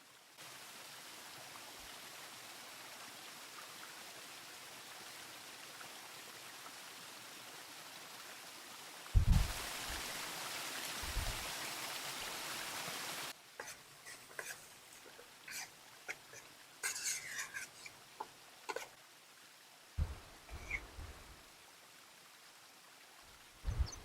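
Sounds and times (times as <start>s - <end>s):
low thumps: 9.2s - 9.6s, 20.0s - 21.4s, 23.6s - 24.0s
river water rushing: 20.0s - 21.6s.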